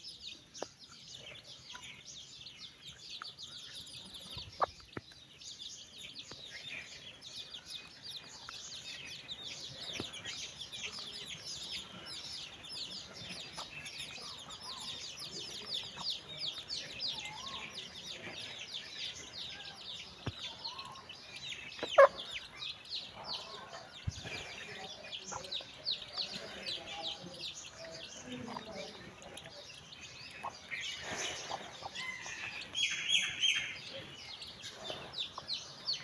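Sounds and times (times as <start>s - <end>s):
chicks peeping: 0.0s - 36.0s
hen clucking: 4.1s - 5.2s, 7.5s - 36.0s.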